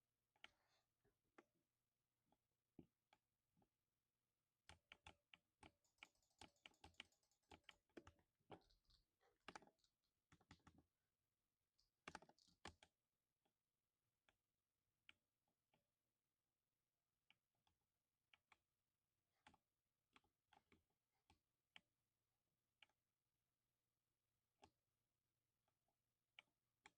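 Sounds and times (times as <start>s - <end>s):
mechanical keyboard typing: 4.7s - 8.2s.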